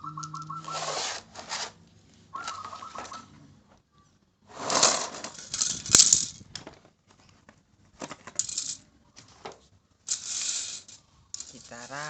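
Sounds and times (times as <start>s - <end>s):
plastic toy pieces rustling and clattering: 4.6s - 6.9s, 8.0s - 9.5s, 10.1s - 12.0s.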